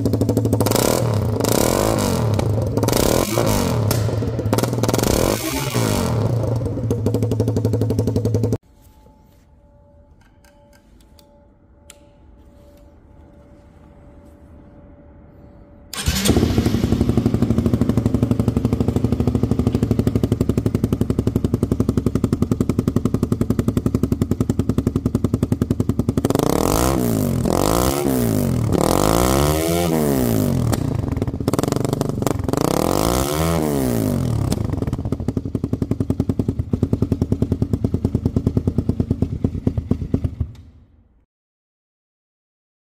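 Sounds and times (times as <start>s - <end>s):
motorcycle engine idling and revving: 0.0s - 8.6s, 15.9s - 41.2s.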